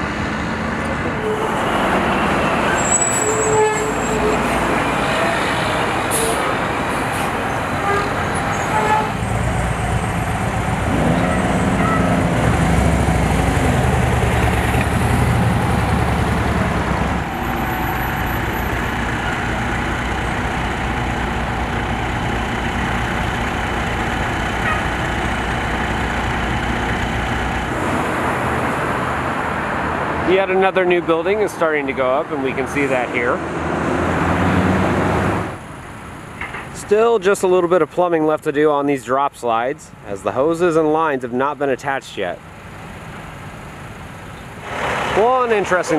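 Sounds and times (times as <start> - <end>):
heavy vehicle engine running: 0.0 - 30.2, 42.4 - 45.9
road traffic noise: 0.0 - 45.9.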